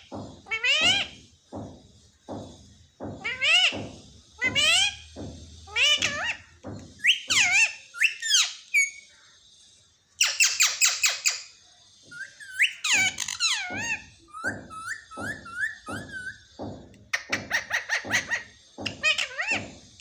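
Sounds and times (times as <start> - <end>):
parrot whistling calls: 12.1 - 16.4.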